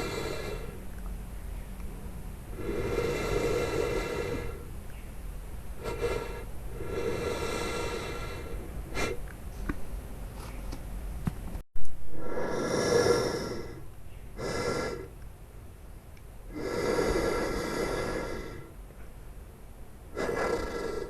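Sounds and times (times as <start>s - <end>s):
raspy breathy hisses: 0.0s - 0.9s, 2.5s - 4.7s, 5.8s - 9.2s, 12.2s - 15.2s, 16.5s - 18.8s, 20.1s - 21.0s.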